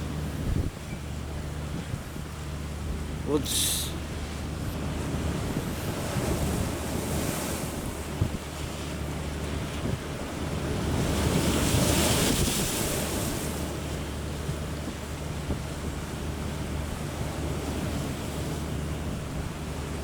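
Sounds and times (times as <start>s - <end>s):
strong wind on microphone: 0.0s - 2.4s, 4.0s - 8.6s
rough waves: 0.0s - 20.0s.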